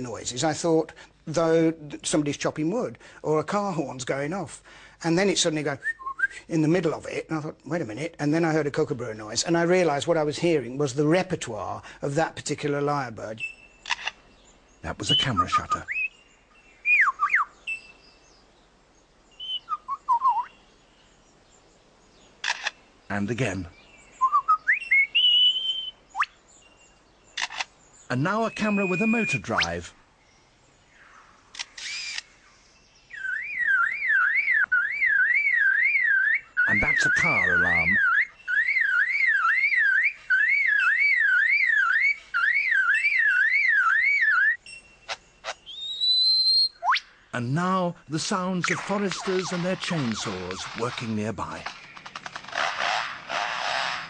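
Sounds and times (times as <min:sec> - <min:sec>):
lyrebird whistling and warbling: 0:05.8 - 0:06.4, 0:14.9 - 0:16.2, 0:16.8 - 0:18.0, 0:19.4 - 0:20.6, 0:24.2 - 0:26.4, 0:28.1 - 0:30.0, 0:33.1 - 0:47.2, 0:48.1 - 0:52.2
sharp clicks: 0:13.8 - 0:14.2, 0:22.4 - 0:22.8, 0:27.4 - 0:27.7, 0:31.5 - 0:32.3, 0:48.6 - 0:54.0
bird mimicking car alarm: 0:33.1 - 0:47.1, 0:48.3 - 0:52.9.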